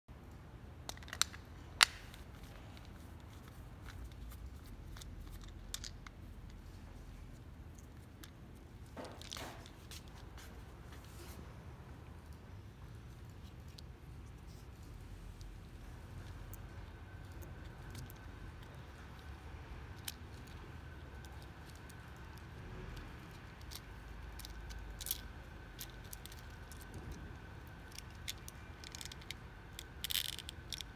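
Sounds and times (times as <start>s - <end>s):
faint steady hum: 0.1s - 30.9s
blind parts clicking: 13.2s - 30.9s.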